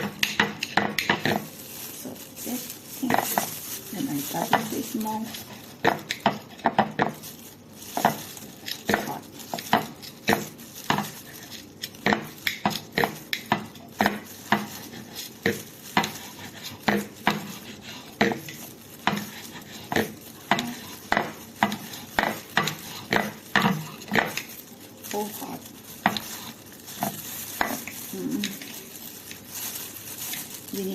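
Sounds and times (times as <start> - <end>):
knife chopping on board: 12.0 - 14.8, 15.4 - 24.4.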